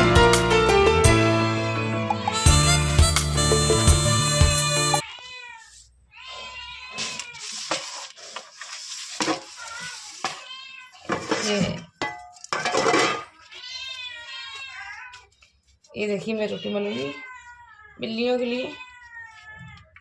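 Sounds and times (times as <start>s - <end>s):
cats meowing: 5.0s - 7.7s, 9.5s - 11.5s, 13.3s - 15.4s, 16.4s - 20.0s
dishes clinking: 11.1s - 13.3s.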